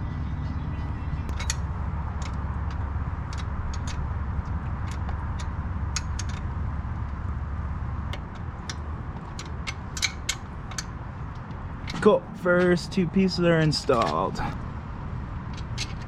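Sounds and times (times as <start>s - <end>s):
metallic clicks of hand tools: 4.9s - 6.4s, 8.6s - 10.9s.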